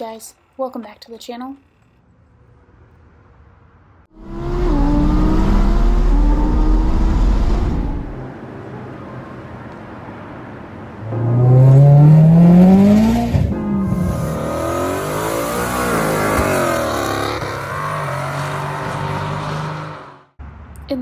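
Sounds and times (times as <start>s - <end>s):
car engine accelerating hard: 4.1s - 8.3s, 11.0s - 20.3s.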